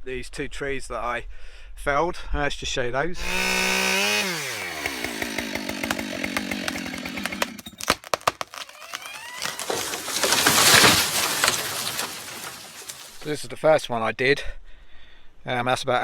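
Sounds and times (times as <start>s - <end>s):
chainsaw revving: 3.2s - 10.6s.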